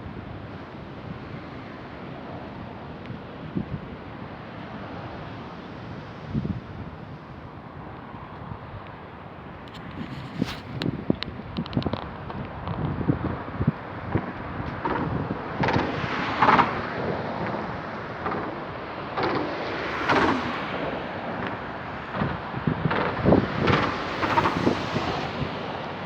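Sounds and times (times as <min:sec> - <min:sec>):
wind buffeting microphone: 0:00.0 - 0:26.0.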